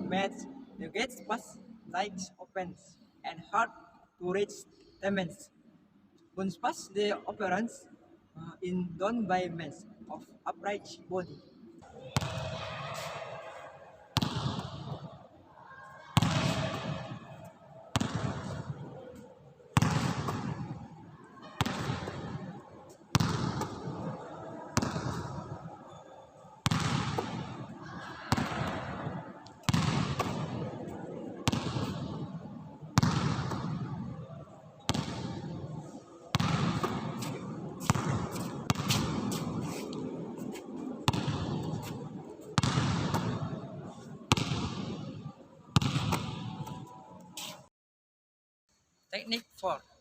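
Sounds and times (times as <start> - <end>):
basketball bouncing with echo: 12.0 - 15.3, 16.2 - 46.9.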